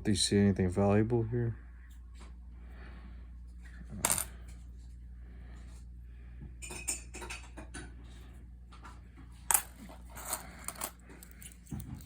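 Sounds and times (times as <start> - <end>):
coins clinking: 9.5 - 11.6.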